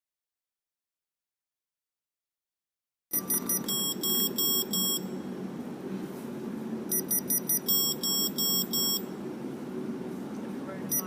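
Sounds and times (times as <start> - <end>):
electronic alarm beeping: 3.1 - 5.2, 6.9 - 9.1
low steady hum: 3.1 - 11.0.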